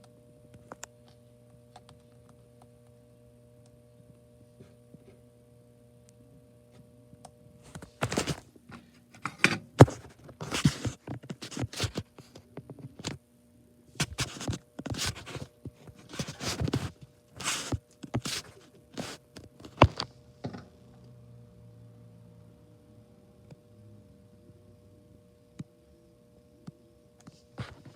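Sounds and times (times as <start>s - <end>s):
faint steady hum: 0.0s - 27.9s
hard objects scraping and knocking: 9.2s - 12.2s.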